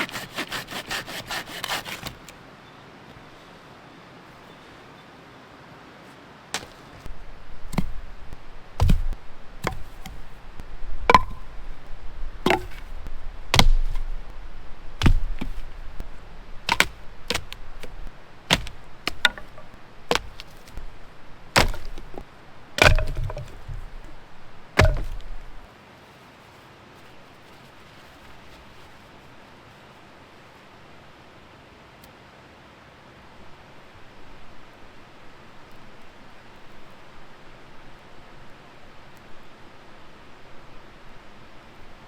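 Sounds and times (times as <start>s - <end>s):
wood being chopped: 6.6s - 8.1s, 8.8s - 10.4s, 11.0s - 11.6s, 12.4s - 14.3s, 15.0s - 15.9s, 16.6s - 20.9s, 21.5s - 24.2s, 24.8s - 25.5s.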